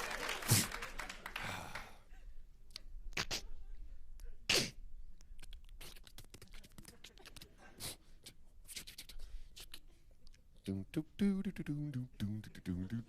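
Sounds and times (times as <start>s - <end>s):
mouth clicks: 2.7s - 3.5s, 4.5s - 10.4s
man making breathy hisses: 7.7s - 9.9s.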